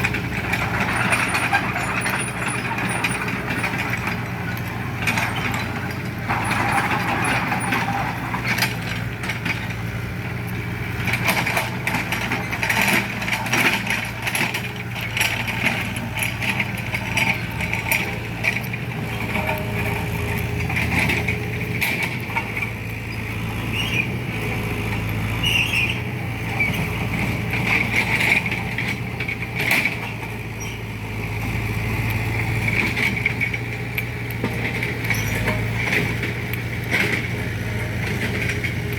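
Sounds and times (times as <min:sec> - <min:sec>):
metal clanks and knocks: 0:00.0 - 0:23.4, 0:32.7 - 0:38.9
road machinery engine running: 0:00.0 - 0:38.9.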